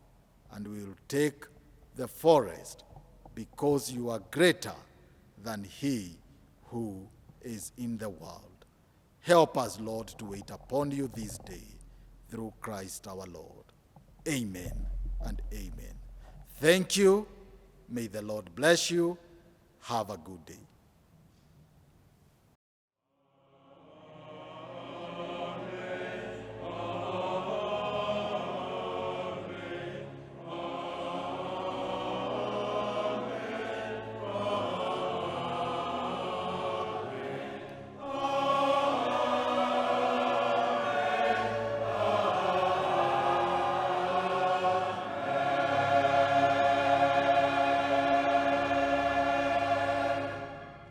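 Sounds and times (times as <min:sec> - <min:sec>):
choir singing held chords: 0:09.2 - 0:13.5, 0:14.3 - 0:19.2, 0:23.2 - 0:50.9.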